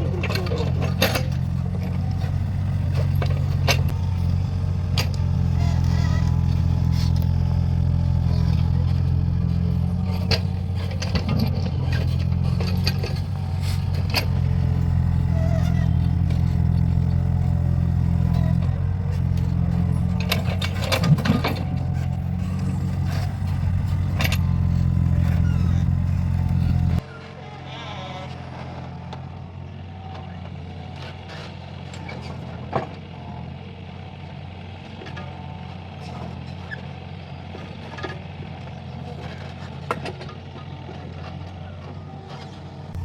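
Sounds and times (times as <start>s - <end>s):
excavator diesel engine running: 0.0s - 43.0s
knocks and scrapes: 0.3s - 27.0s.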